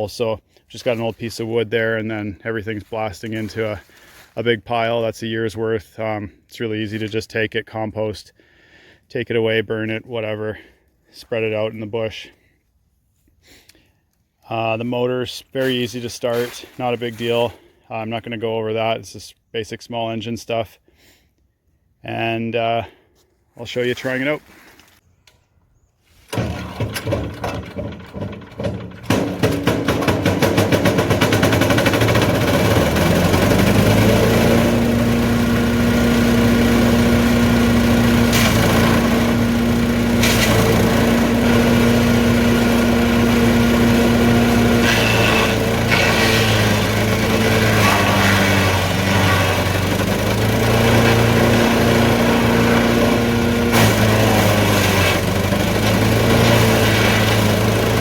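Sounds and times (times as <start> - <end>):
chipper engine running: 0.0 - 4.4, 26.3 - 58.0
wood being chipped: 26.3 - 58.0.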